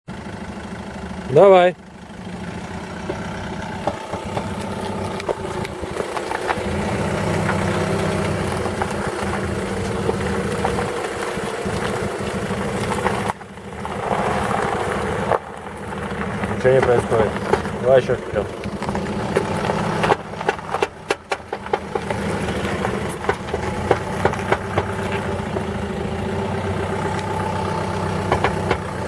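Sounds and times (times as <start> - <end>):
car engine running: 0.1 - 29.0.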